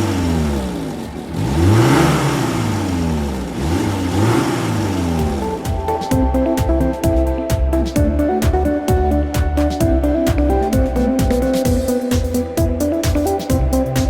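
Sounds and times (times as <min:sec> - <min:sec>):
engine revving: 0:00.0 - 0:05.7
electronic music with a beat: 0:04.2 - 0:14.0.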